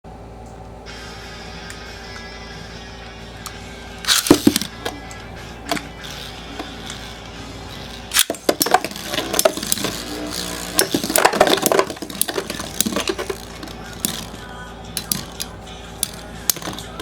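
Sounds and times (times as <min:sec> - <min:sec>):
metal spinning tops clashing: 0:04.0 - 0:17.0.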